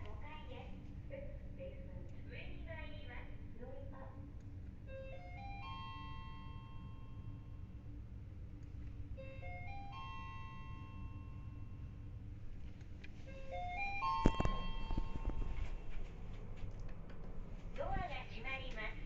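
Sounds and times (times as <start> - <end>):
low steady rumble: 0.0 - 19.0
elevator chime: 4.8 - 7.9, 9.0 - 16.2.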